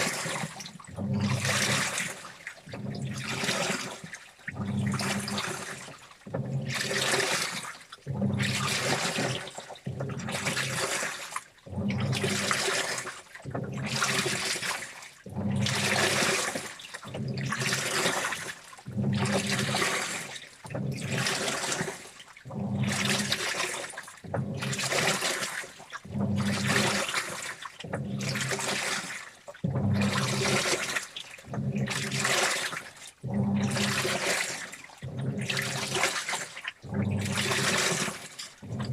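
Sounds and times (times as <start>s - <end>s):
water sloshing in washing machine: 0.0s - 38.9s
low motor hum: 33.2s - 34.2s, 35.0s - 35.9s, 36.8s - 37.7s, 38.6s - 38.9s.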